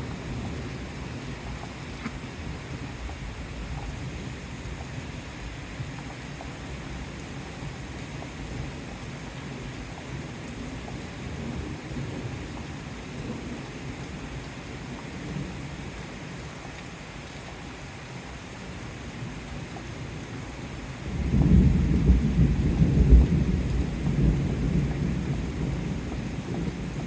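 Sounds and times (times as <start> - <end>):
steady rain falling: 0.0 - 27.0
thunder rumbling: 21.1 - 27.0.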